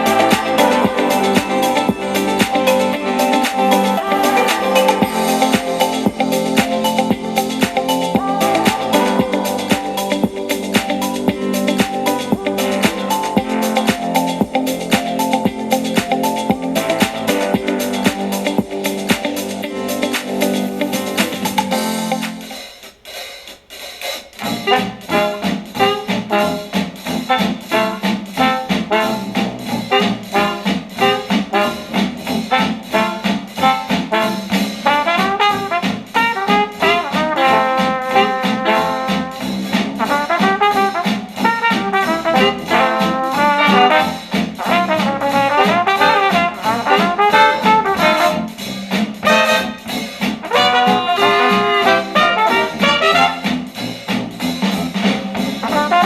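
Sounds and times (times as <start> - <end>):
retro jazz with trumpet and trombone: 0.0 - 22.6, 24.4 - 56.0.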